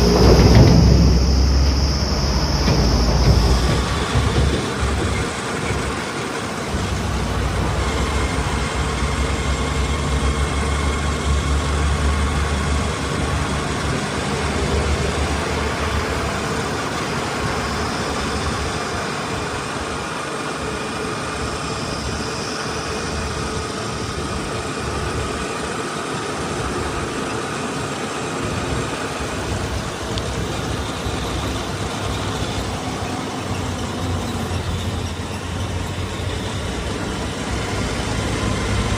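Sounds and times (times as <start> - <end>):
heavy diesel engine rumbling: 0.0 - 38.9.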